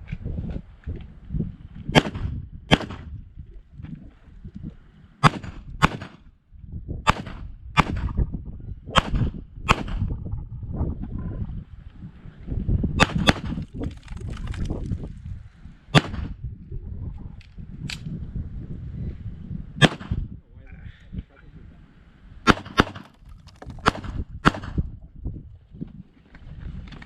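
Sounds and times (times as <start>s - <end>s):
pistol shots: 1.9s - 3.1s, 5.2s - 6.2s, 7.1s - 8.1s, 8.9s - 10.0s, 13.0s - 13.6s, 15.9s - 16.4s, 19.8s - 20.2s, 22.5s - 23.1s, 23.8s - 24.8s.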